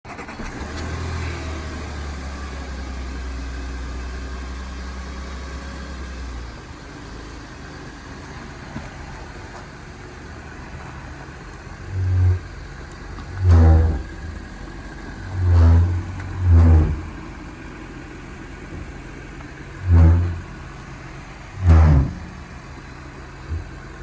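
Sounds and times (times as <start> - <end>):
car running hum: 1.1 - 24.0
brake groan: 8.0 - 24.0.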